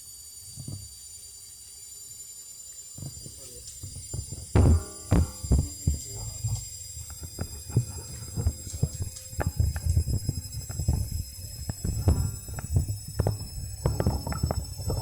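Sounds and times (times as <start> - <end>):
knocks and rattles: 3.8 - 15.0
washing machine drum rumbling: 4.2 - 15.0.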